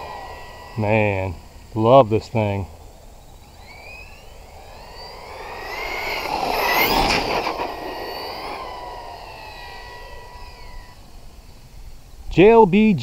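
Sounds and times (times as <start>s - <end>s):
rc car electric motor whining: 0.0s - 12.2s
tyre noise: 3.6s - 11.4s.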